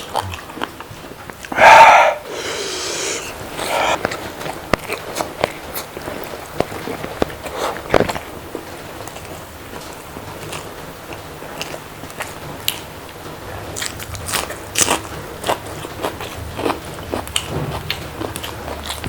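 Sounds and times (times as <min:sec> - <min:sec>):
person chewing crunchy food: 0:00.0 - 0:12.9, 0:13.8 - 0:19.0.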